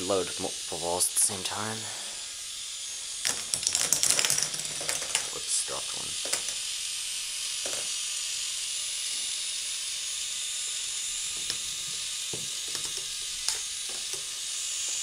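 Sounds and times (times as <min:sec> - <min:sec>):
steady hiss: 0:00.0 - 0:09.3
ball rolling on plastic track: 0:03.3 - 0:05.3, 0:06.2 - 0:06.6.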